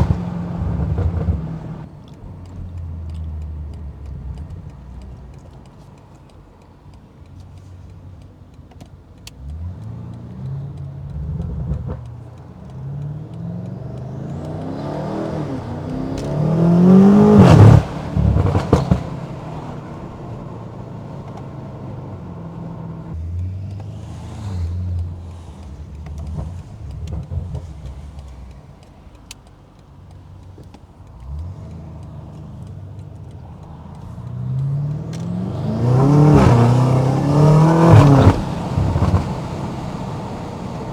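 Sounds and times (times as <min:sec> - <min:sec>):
car engine revving hard: 0:00.0 - 0:01.9, 0:09.4 - 0:28.4, 0:31.2 - 0:40.9.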